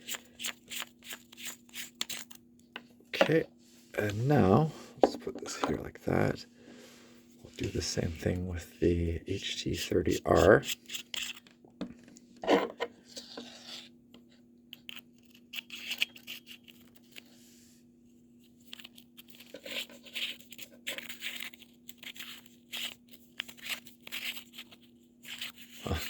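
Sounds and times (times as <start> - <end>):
handling clicks scrapes and rustles: 12.4 - 13.9, 14.7 - 17.4.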